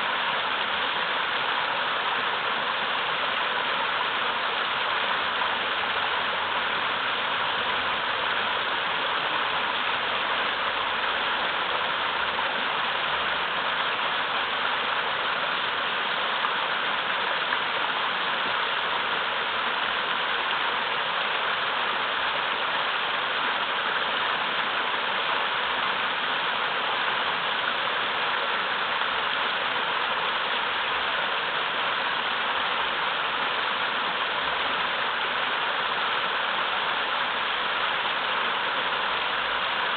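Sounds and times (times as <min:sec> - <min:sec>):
water rushing over boulders: 0:00.0 - 0:39.9.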